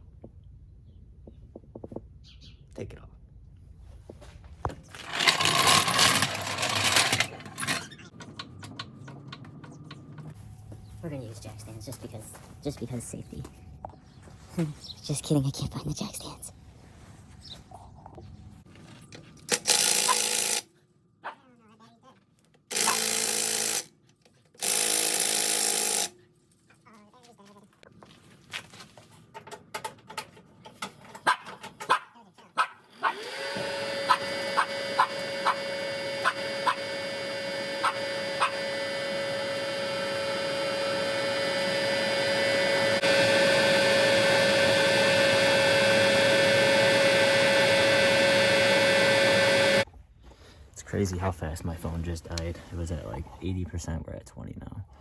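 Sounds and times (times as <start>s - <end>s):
impact wrench running: 4.7s - 10.4s, 19.1s - 20.7s, 22.7s - 24.0s, 24.6s - 26.2s, 32.9s - 49.8s
loud rough rattling tool: 4.7s - 10.4s, 19.4s - 20.7s, 22.7s - 23.9s, 24.6s - 26.2s, 32.9s - 49.8s.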